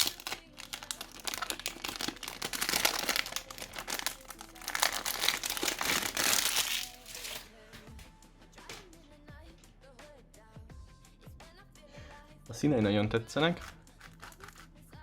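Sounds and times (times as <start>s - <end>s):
plastic wrapping crinkling: 0.0s - 7.5s, 13.6s - 14.6s.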